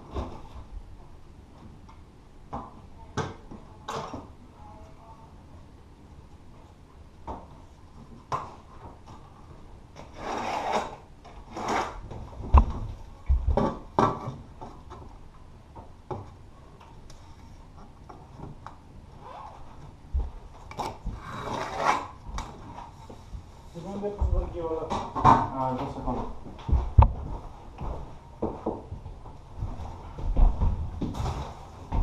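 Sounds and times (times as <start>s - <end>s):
scraping and rubbing: 10.0s - 12.1s, 20.7s - 23.4s.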